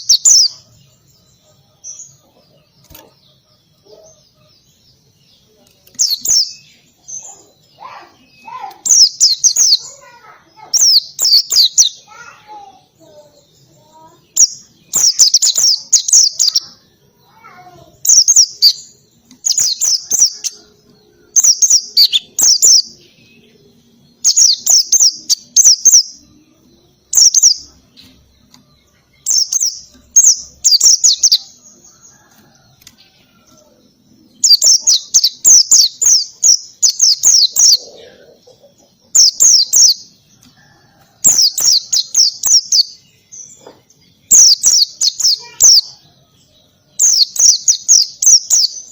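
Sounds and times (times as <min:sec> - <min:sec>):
bird singing rapid high notes: 0:05.9 - 0:26.3, 0:44.2 - 0:46.0.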